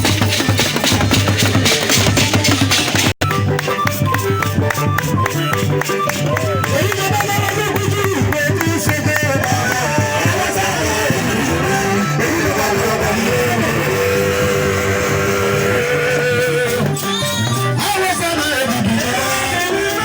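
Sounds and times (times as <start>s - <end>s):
band music: 0.0s - 20.0s
plucked guitar line: 16.0s - 20.0s.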